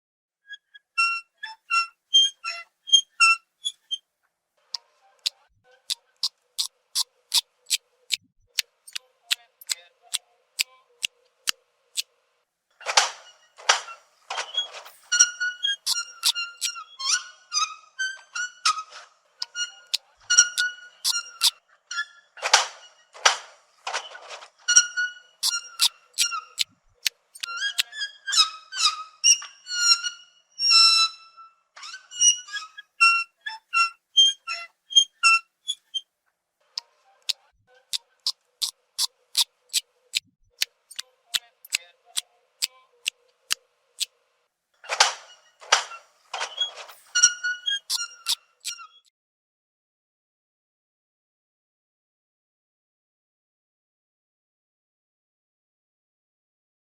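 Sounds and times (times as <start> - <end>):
sharp clicks: 8.9 - 9.8, 15.9 - 16.8, 20.6 - 21.5, 25.4 - 26.3, 27.4 - 27.9, 40.9 - 41.8
sloth squeaking calls: 14.9 - 16.8, 20.4 - 21.5, 25.4 - 26.4.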